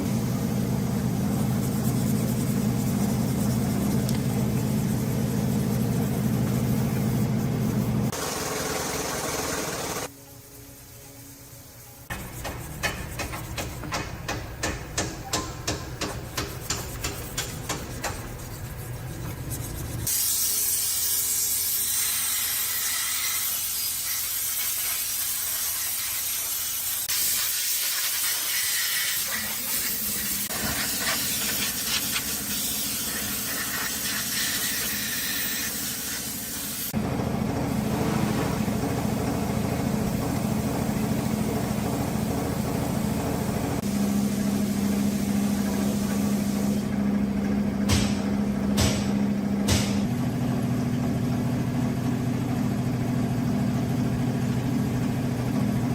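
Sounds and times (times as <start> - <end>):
low hum: 37.0 - 41.2.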